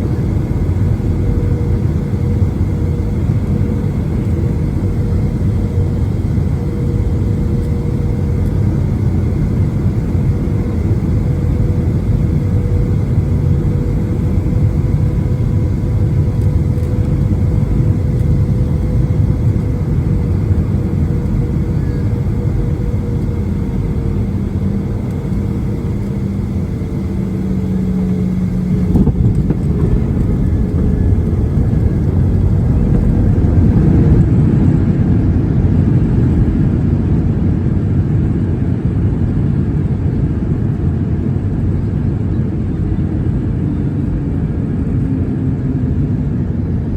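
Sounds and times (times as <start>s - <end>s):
low tone: 0.0s - 36.1s
faint steady hum: 0.0s - 36.8s
airliner engine and airflow noise: 0.0s - 46.9s.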